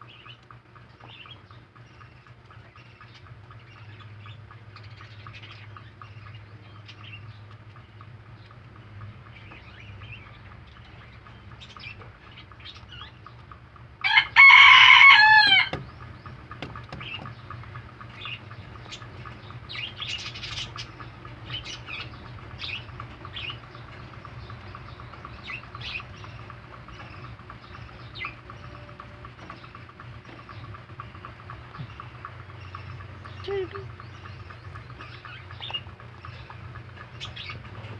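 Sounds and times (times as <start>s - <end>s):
rabbits munching vegetables: 0.0s - 37.9s.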